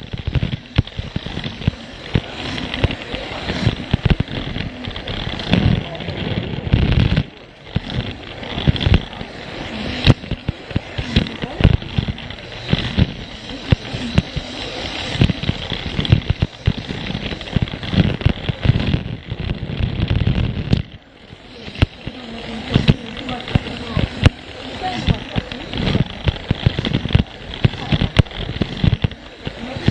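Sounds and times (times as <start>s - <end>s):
toy train clicking over track joints: 0.0s - 29.9s
toy train motor rattle: 0.0s - 29.9s
voices chattering: 0.0s - 29.9s.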